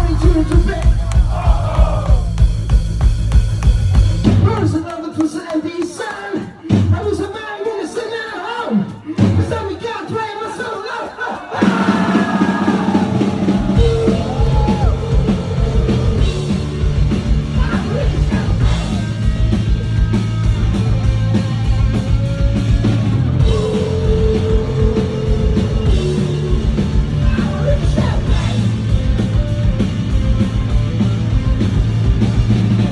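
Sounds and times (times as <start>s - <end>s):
shouted singing vocal: 0.0s - 2.4s, 7.6s - 19.3s, 23.2s - 29.0s
loud rock music: 0.0s - 5.0s, 6.5s - 32.9s
drum kit beating: 0.0s - 8.0s, 11.4s - 32.9s.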